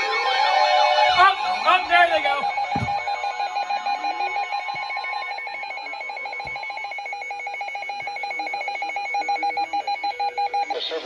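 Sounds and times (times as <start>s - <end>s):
faint low thud: 2.7s - 3.0s.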